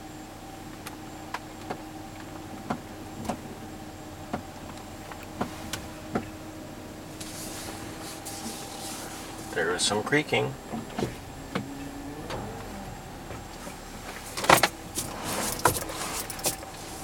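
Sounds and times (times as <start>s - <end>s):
car cabin hum: 0.0s - 17.0s
car body creaking: 7.2s - 17.0s.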